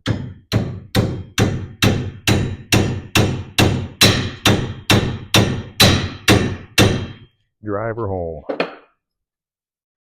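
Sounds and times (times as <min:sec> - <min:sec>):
hammer striking steel: 0:00.0 - 0:07.2.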